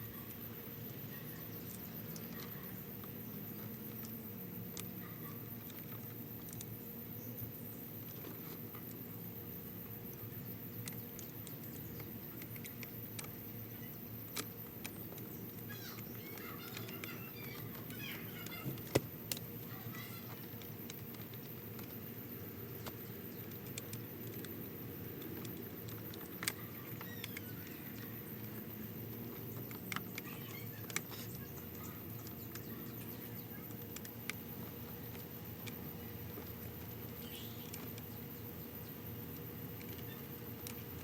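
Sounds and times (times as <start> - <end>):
faint chirps: 0.0 - 41.0
steady low hum: 0.0 - 41.0
sharp clicks: 10.1 - 41.0.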